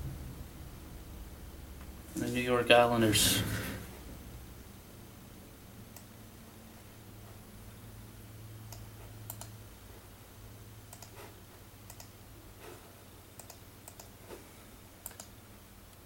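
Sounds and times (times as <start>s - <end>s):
low steady hum: 0.0s - 16.0s
computer clicks: 8.7s - 9.6s, 10.9s - 11.2s, 11.9s - 12.2s, 13.4s - 14.2s, 15.0s - 15.4s.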